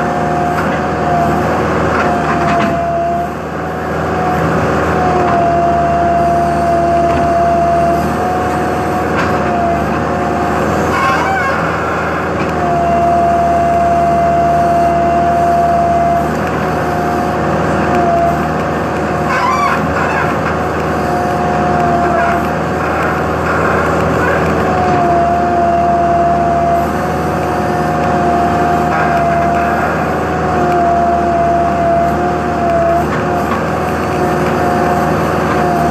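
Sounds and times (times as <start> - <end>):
diesel engine running: 0.0 - 35.9
short squeaky sounds: 10.8 - 11.9, 19.2 - 20.4.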